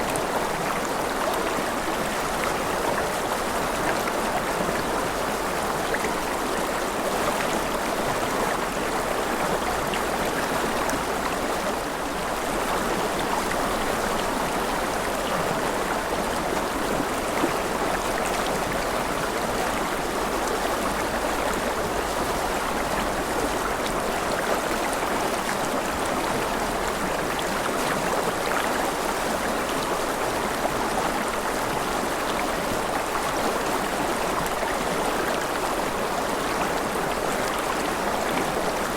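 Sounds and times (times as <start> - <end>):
steady wash of water: 0.0 - 38.9.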